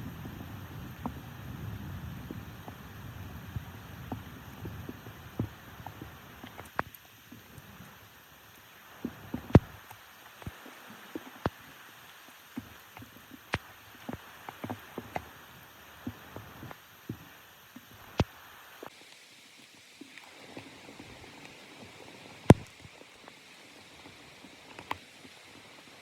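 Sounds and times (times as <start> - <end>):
raindrops tapping: 0.0 - 7.7, 9.0 - 11.6
rain hiss: 0.0 - 26.0.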